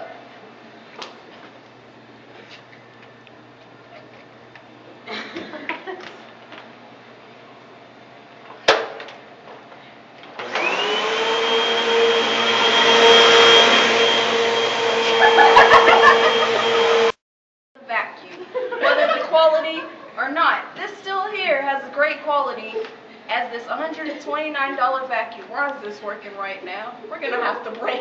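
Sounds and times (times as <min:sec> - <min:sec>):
vacuum cleaner motor whining: 0:10.3 - 0:17.2.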